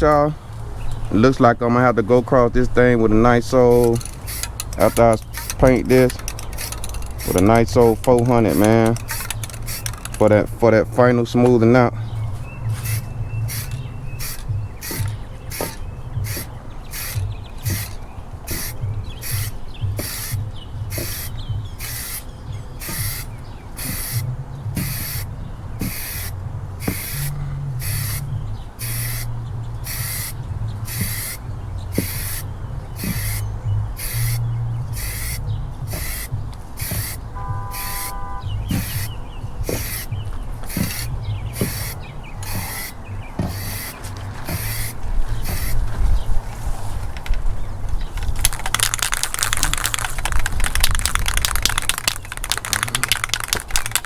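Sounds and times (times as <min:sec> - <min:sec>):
paint spray gun hissing: 0:03.7 - 0:10.3, 0:12.7 - 0:45.8.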